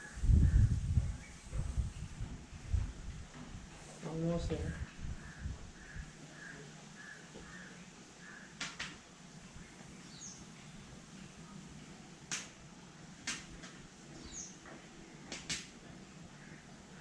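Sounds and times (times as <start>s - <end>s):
bird chirping: 9.5s - 11.0s, 14.2s - 14.6s.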